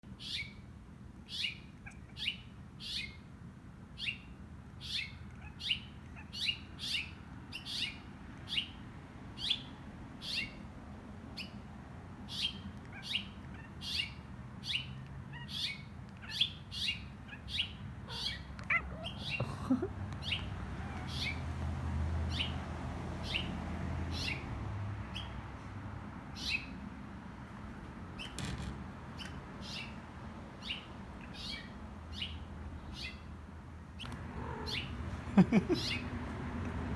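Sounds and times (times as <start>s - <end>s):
songbird chirping: 1.3s - 3.3s, 12.2s - 21.5s, 29.2s - 30.0s, 30.6s - 33.3s.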